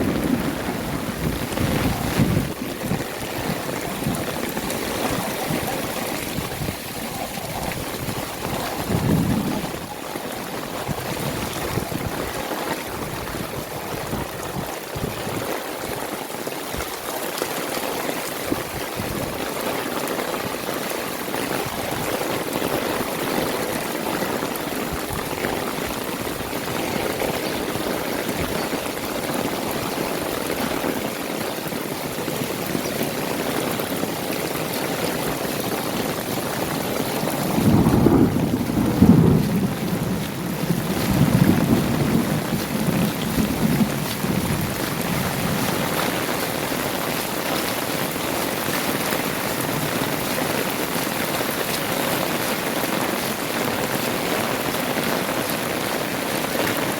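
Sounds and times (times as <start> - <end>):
water running and pouring: 0.0 - 55.2
heavy rain falling: 0.0 - 56.9.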